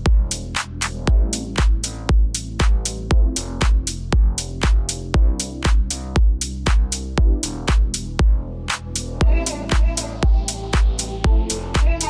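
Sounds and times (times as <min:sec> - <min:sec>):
kick drum: 0:00.0 - 0:00.4, 0:01.1 - 0:08.4, 0:09.2 - 0:12.0
off-beat hi-hats: 0:00.0 - 0:12.0
electronic dance music: 0:01.1 - 0:01.9, 0:02.6 - 0:05.9, 0:06.7 - 0:06.9, 0:07.5 - 0:08.4, 0:09.2 - 0:12.0.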